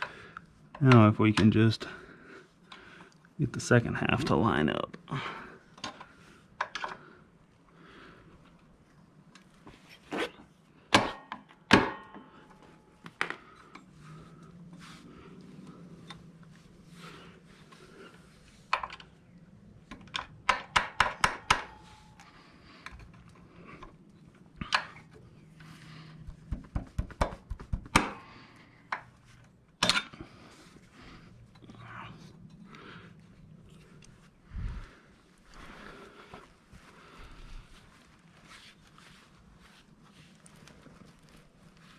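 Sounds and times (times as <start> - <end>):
metal parts clicking and knocking: 19.9 - 21.8.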